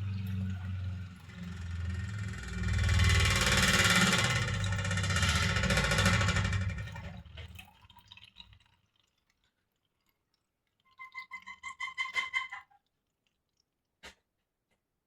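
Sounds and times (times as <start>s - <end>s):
pitched water drips: 0.0s - 3.6s, 6.4s - 14.0s
washing machine motor hum: 0.0s - 7.7s.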